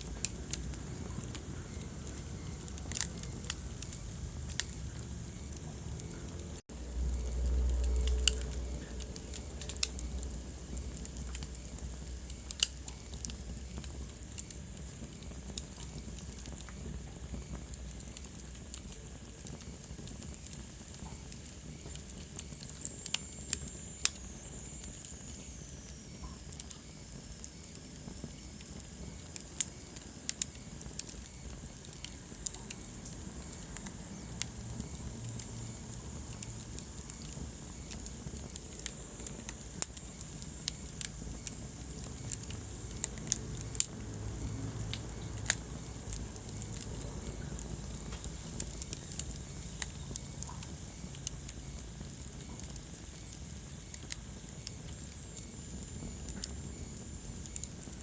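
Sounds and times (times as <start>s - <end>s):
low rumble: 0.0s - 12.6s
soft steady hiss: 0.0s - 58.0s
wood fire crackling and popping: 0.0s - 58.0s.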